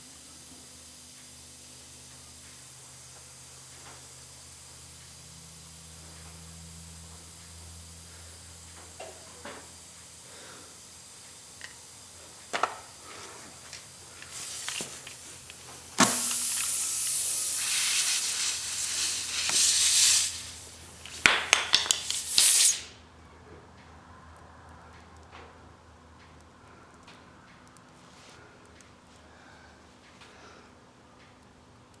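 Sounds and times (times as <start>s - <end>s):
compressed air hissing: 7.2s - 23.0s.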